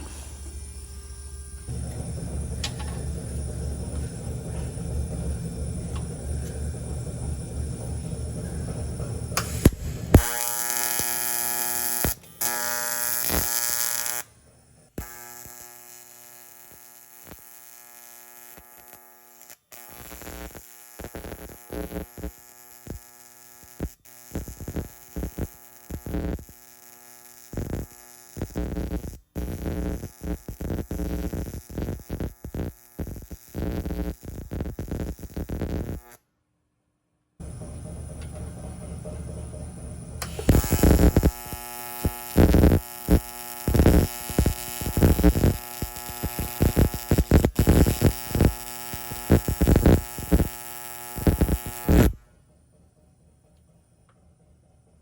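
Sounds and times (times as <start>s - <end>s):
welding arc buzzing: 0.0s - 36.2s, 40.2s - 52.2s.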